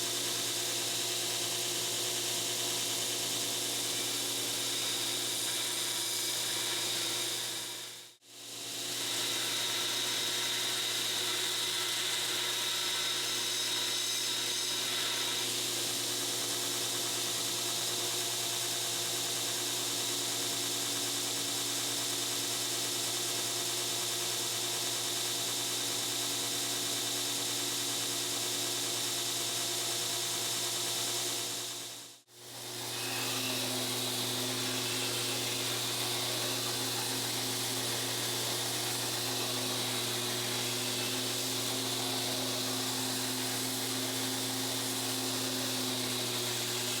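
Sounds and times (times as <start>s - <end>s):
belt grinder motor hum: 32.6s - 47.0s
steel blade grinding on belt: 32.6s - 47.0s.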